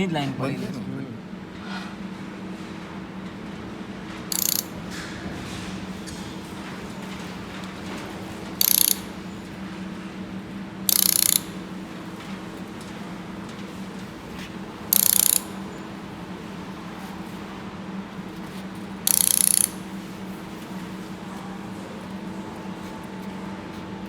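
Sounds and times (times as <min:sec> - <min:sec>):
welding gun hissing bursts: 0:04.3 - 0:04.7, 0:08.6 - 0:09.2, 0:10.9 - 0:11.7, 0:14.9 - 0:15.6, 0:19.1 - 0:20.0
welding machine humming: 0:04.3 - 0:24.0.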